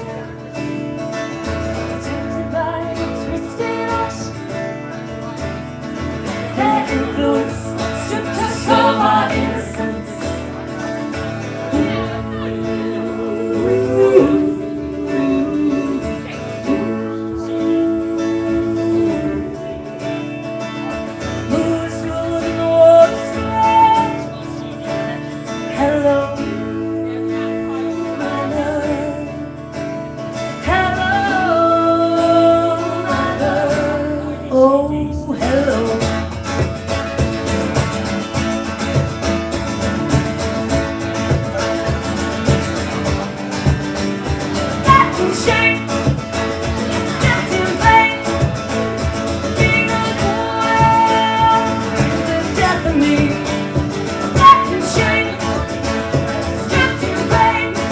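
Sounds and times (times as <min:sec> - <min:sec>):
acoustic guitar: 0:00.0 - 0:57.9
person singing: 0:06.4 - 0:10.4, 0:11.7 - 0:20.2, 0:21.3 - 0:24.4, 0:25.6 - 0:29.6, 0:30.6 - 0:36.4, 0:44.8 - 0:48.8, 0:49.4 - 0:57.9.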